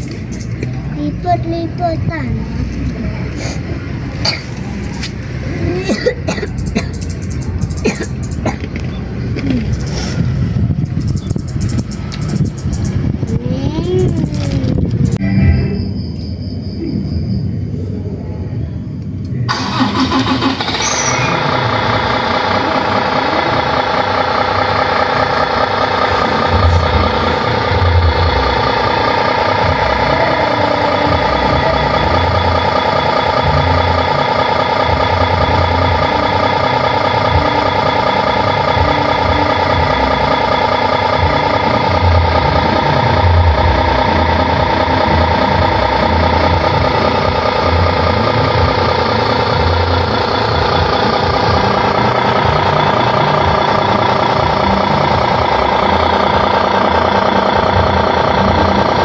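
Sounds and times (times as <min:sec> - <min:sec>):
simulated diesel truck engine: 0:00.0 - 0:17.8, 0:19.0 - 0:59.0
rising start-up sound: 0:19.5 - 0:59.0.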